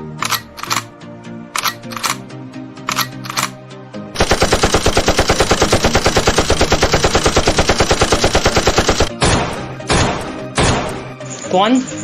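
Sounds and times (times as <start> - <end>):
machine-gun fire: 0.2 - 0.9, 2.9 - 3.6, 4.2 - 11.1.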